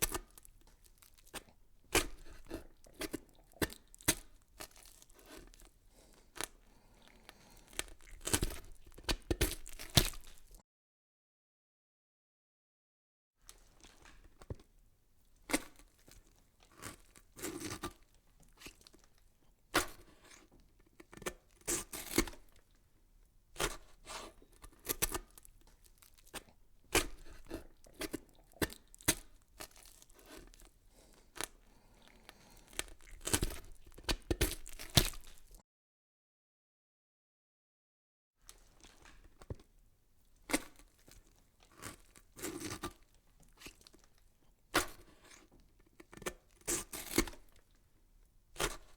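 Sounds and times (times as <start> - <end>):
crackling and tearing noises: 0.0 - 10.6, 15.4 - 22.8, 23.6 - 35.6, 40.3 - 47.8.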